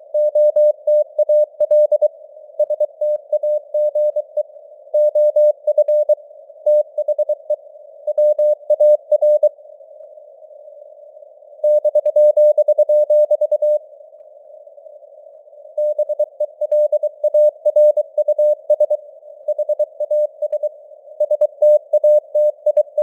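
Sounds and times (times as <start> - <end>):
morse code beeps: 0.2 - 4.4, 5.0 - 7.5, 8.1 - 9.5, 11.6 - 13.8, 15.8 - 23.0.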